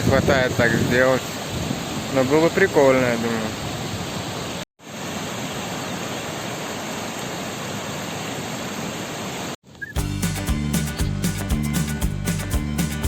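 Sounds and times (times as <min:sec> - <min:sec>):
music: 0:10.0 - 0:13.0.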